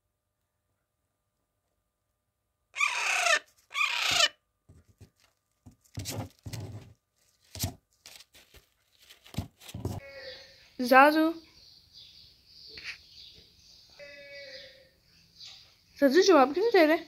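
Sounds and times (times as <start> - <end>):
parrot squawking: 2.8 - 4.4
soft knocks and scratches: 4.7 - 10.0.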